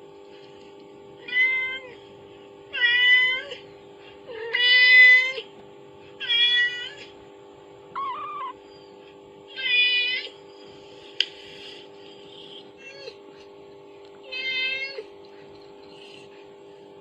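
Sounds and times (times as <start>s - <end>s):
faint steady hum: 0.0s - 17.0s
cat meowing: 8.0s - 8.6s.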